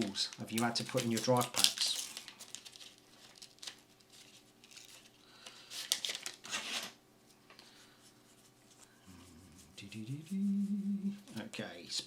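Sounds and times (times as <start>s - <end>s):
foil wrapper crinkling and tearing: 0.0s - 7.0s.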